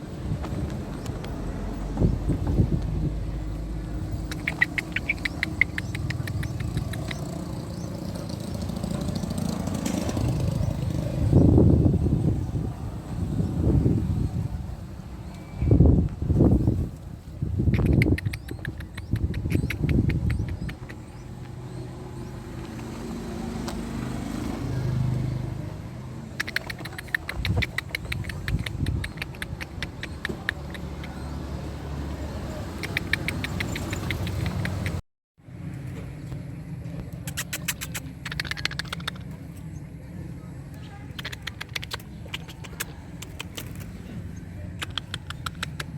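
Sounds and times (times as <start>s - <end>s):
vehicle engine passing: 0.0s - 16.8s, 17.4s - 45.9s
bird chicks chirping: 4.2s - 9.6s.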